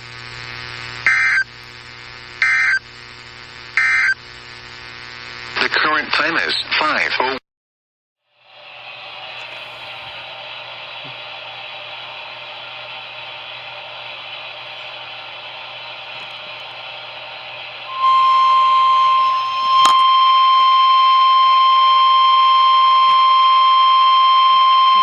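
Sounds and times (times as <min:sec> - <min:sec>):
radio static hiss: 0:00.0 - 0:07.4, 0:08.5 - 0:20.9
loud warning alarm tone: 0:17.9 - 0:25.0.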